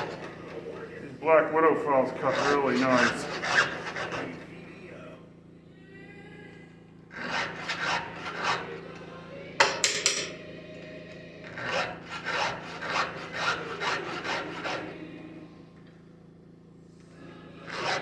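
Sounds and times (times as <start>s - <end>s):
file rasping on chainsaw chain: 2.2s - 4.4s, 7.1s - 9.0s, 11.4s - 15.2s, 17.7s - 18.0s.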